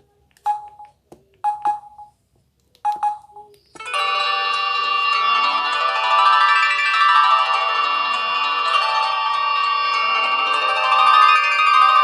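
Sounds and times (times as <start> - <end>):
phone key beeps and clicks: 0.4 - 2.2, 2.8 - 3.5
phone ringtone: 0.5 - 2.2, 2.9 - 12.0.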